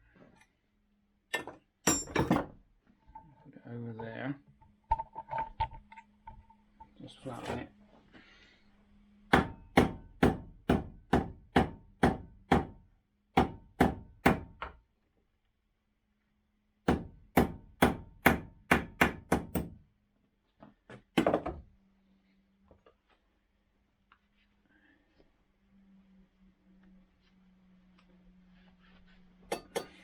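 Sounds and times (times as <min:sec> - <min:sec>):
hammer striking metal tool: 0:01.4 - 0:02.5, 0:09.3 - 0:12.7, 0:29.5 - 0:30.0.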